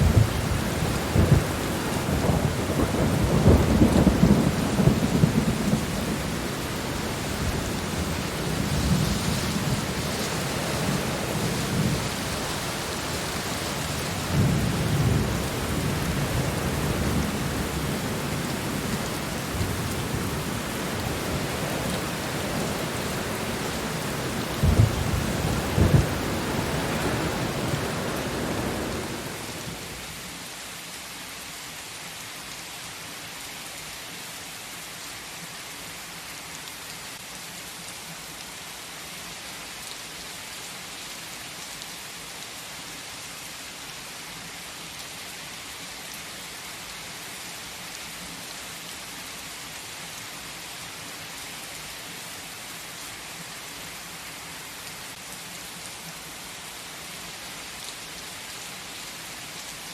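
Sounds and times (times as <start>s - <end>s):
thunder rumble: 0.0s - 30.1s
heavy rain: 0.0s - 59.9s
sharp thunder claps: 24.6s - 29.9s.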